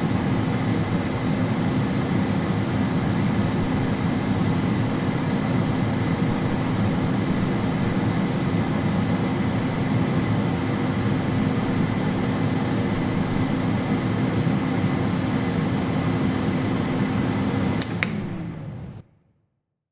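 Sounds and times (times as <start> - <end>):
air fryer fan humming: 0.0 - 19.0
sharp click: 17.8 - 18.4.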